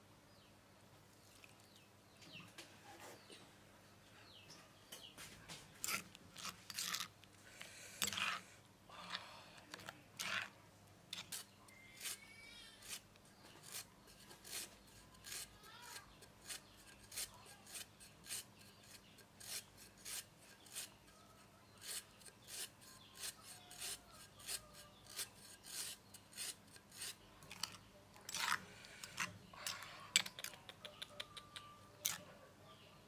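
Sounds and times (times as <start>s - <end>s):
hand scraping strokes: 5.8s - 30.2s.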